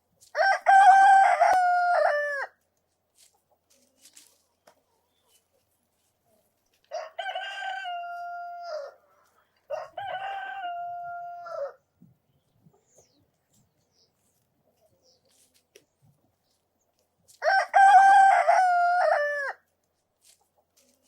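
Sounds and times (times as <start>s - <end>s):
rooster crowing: 0.4s - 2.6s, 6.9s - 9.0s, 9.7s - 11.8s, 17.4s - 19.6s.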